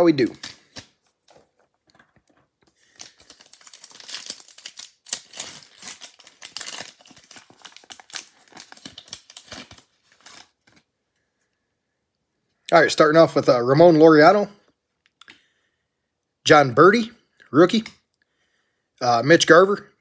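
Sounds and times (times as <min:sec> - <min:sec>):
wrapper tearing and crinkling: 0:00.1 - 0:01.7, 0:02.7 - 0:10.8.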